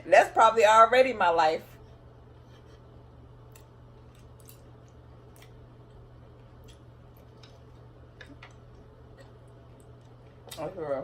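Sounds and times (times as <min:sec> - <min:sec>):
low steady hum: 0:00.0 - 0:11.0
person chewing: 0:03.4 - 0:10.5.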